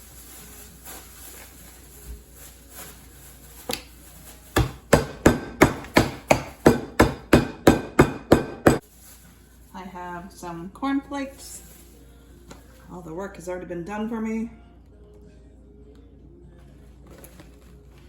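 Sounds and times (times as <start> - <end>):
pounding nuts in a plastic bag: 0.0 - 9.2.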